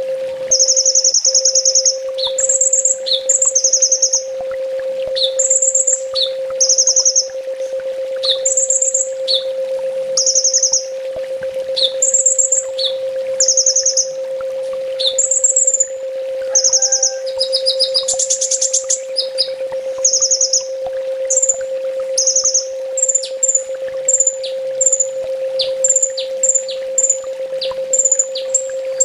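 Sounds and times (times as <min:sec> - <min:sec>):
steady low hum: 0:00.0 - 0:29.0
small bird singing high-pitched song: 0:00.5 - 0:04.3, 0:05.2 - 0:07.4, 0:08.2 - 0:09.5, 0:10.2 - 0:10.9, 0:11.8 - 0:14.2, 0:15.0 - 0:21.6, 0:22.2 - 0:28.8.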